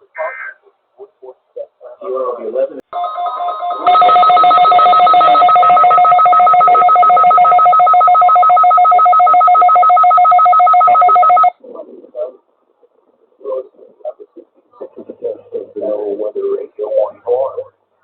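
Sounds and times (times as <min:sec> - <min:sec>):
pulsing two-pitch alert tone: 0:03.0 - 0:11.5.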